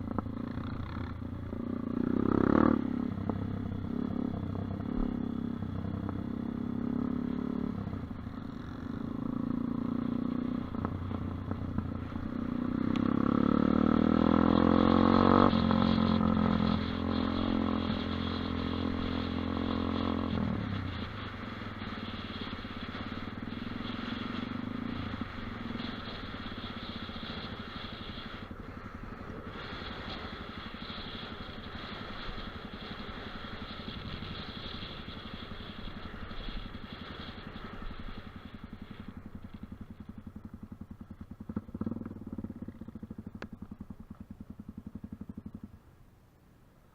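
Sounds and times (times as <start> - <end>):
dirt bike engine revving: 0.0 - 5.4, 12.0 - 20.4.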